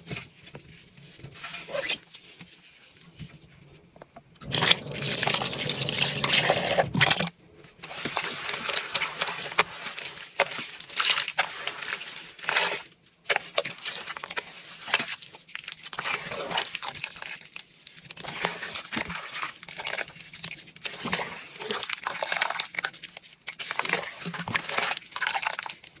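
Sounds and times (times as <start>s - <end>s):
gritty scrubbing strokes: 4.4s - 7.2s.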